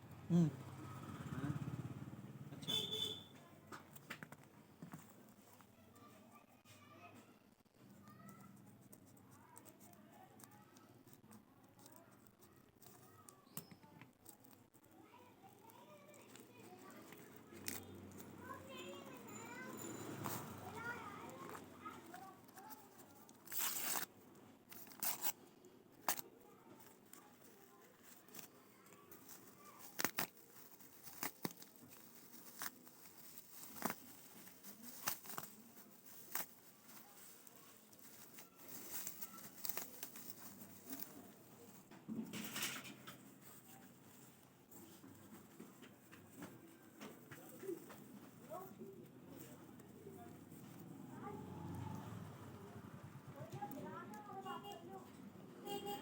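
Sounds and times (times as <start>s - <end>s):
faint voices: 0.1s - 56.0s
packaging rustling: 15.5s - 50.9s.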